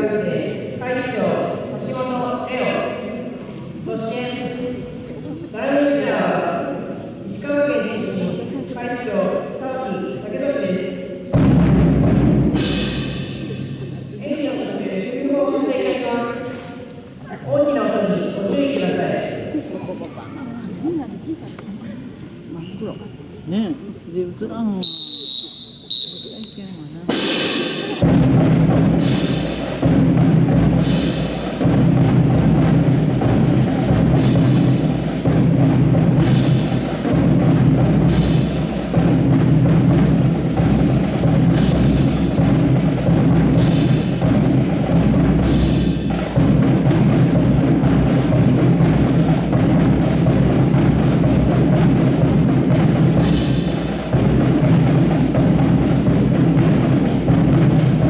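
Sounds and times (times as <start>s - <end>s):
drum-led music: 11.3s - 14.2s, 24.8s - 58.0s
sharp crash-like stroke: 27.1s - 28.2s.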